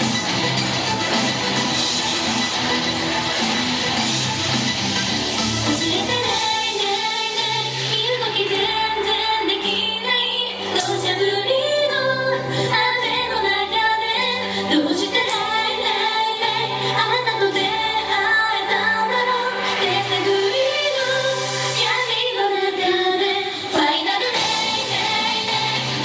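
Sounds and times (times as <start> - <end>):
held bass line: 0.0 - 6.8
woman singing: 5.6 - 26.0.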